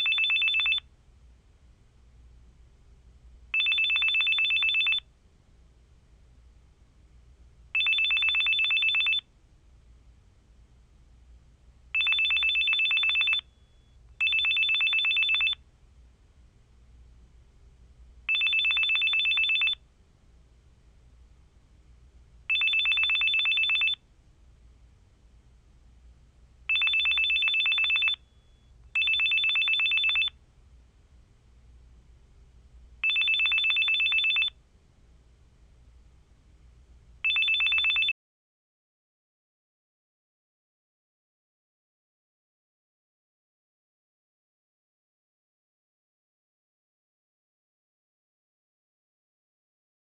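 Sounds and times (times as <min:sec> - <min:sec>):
telephone ringing: 0:00.0 - 0:00.9, 0:03.5 - 0:05.1, 0:07.8 - 0:09.3, 0:12.0 - 0:15.6, 0:18.3 - 0:19.8, 0:22.5 - 0:24.0, 0:26.7 - 0:30.4, 0:33.0 - 0:34.6, 0:37.2 - 0:38.1.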